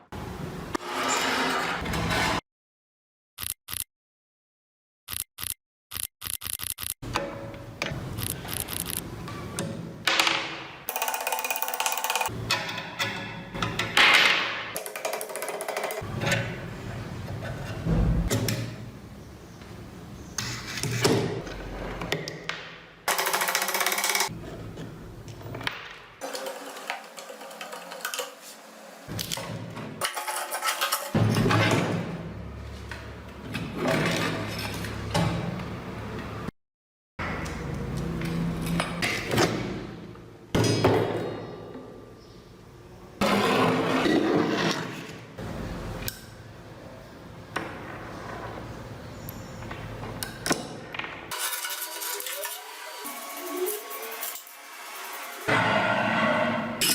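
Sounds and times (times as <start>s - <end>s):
harsh metal scraping: 51.3s - 56.9s.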